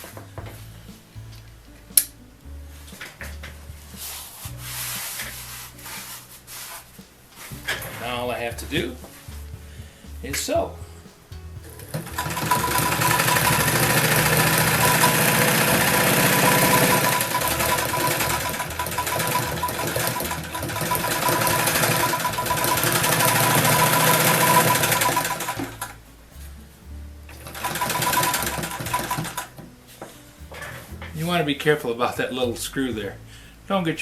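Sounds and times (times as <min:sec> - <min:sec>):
sewing machine stitching: 0:11.9 - 0:26.0, 0:27.4 - 0:29.6.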